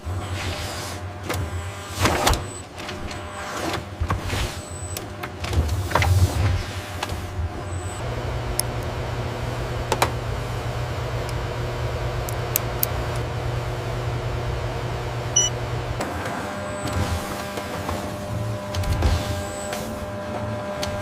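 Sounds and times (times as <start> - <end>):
low machine hum: 0.0 - 21.0
short electronic beep: 15.4 - 15.6.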